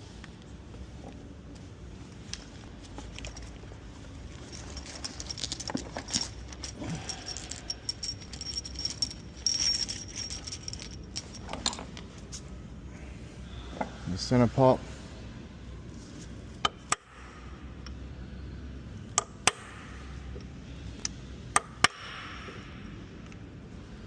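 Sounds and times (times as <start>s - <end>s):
metal tools clinking: 4.3s - 12.0s
thin high ringing: 4.4s - 11.8s.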